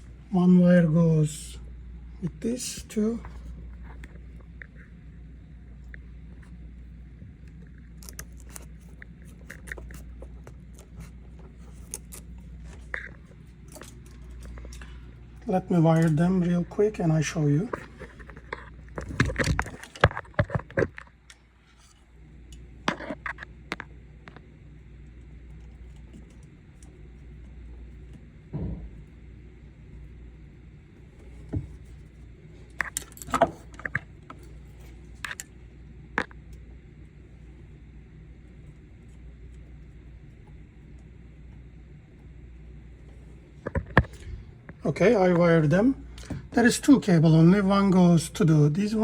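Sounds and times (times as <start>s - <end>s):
steady low hum: 0.0s - 49.0s
wires clicking and rattling: 5.8s - 16.7s, 17.6s - 28.2s, 30.9s - 37.1s.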